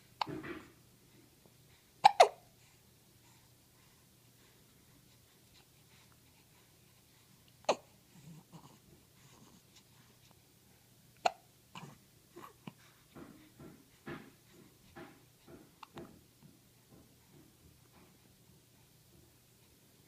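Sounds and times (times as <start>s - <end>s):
baby hiccuping: 2.0s - 2.5s, 7.6s - 7.9s, 11.2s - 12.6s.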